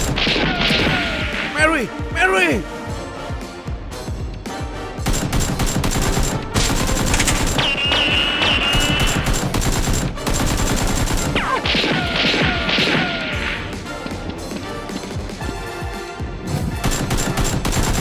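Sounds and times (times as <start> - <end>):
background music: 0.0 - 18.0
automatic gunfire: 5.1 - 13.4, 16.8 - 18.0.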